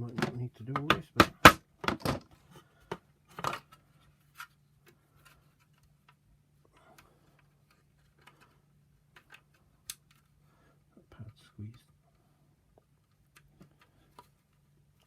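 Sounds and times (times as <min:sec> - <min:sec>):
low steady hum: 0:00.0 - 0:15.0
plastic parts clicking: 0:02.9 - 0:10.3.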